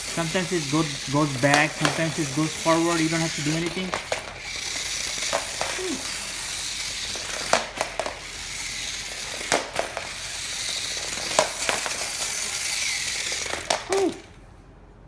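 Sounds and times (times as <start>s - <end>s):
toy train motor whirring: 0.0s - 14.4s
sharp plastic clacks: 0.1s - 14.4s.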